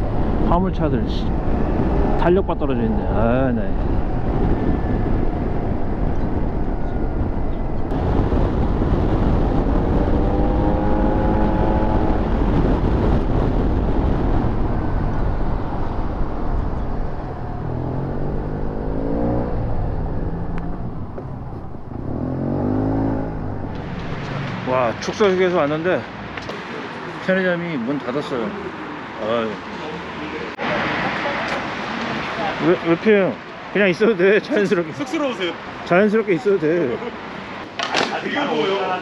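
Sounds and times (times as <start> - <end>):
wind rushing on microphone: 0.0 - 25.3.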